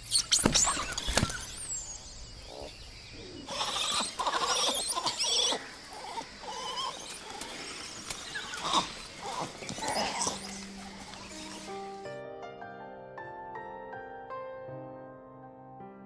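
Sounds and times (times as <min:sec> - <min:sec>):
monkeys shrill calls: 0:00.0 - 0:12.0.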